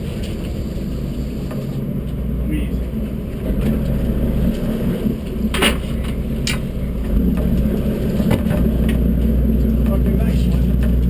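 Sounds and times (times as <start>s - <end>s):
boat engines droning: 0.0s - 11.0s.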